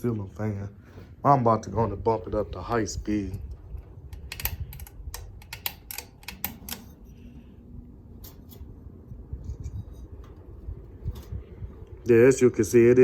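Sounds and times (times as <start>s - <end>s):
ceiling fan running: 0.0s - 13.0s
light clicks: 4.1s - 6.9s.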